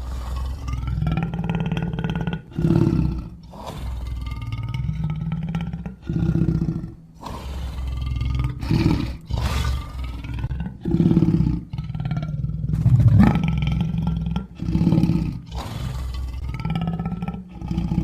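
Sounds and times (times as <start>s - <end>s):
lions roaring: 0.0s - 18.0s.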